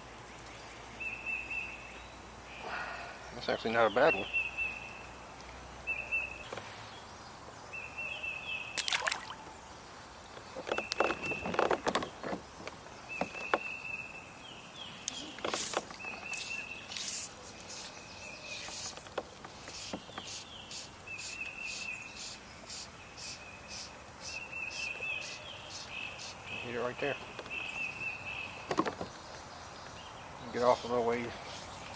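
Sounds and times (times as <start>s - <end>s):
knocks and scrapes in a kayak: 10.4s - 13.7s, 15.2s - 16.4s
high-pitched wildlife call: 19.7s - 28.6s.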